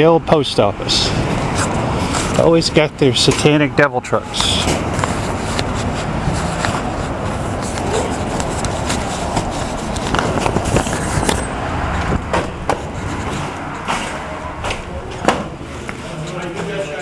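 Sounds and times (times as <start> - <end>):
rumbling road traffic: 0.0 - 17.0
sharp knocks and clicks: 12.0 - 14.0.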